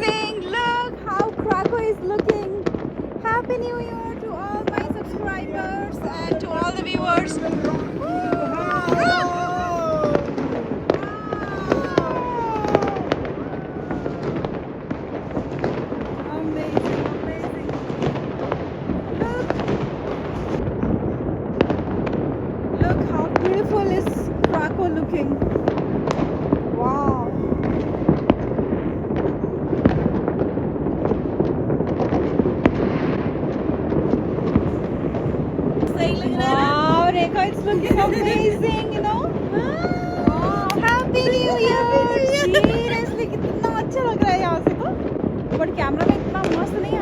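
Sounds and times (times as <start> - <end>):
fireworks cracks and bangs: 0.0 - 47.0
rumble of distant fireworks: 0.0 - 47.0
falling firework whistle: 7.2 - 15.7, 26.8 - 30.4.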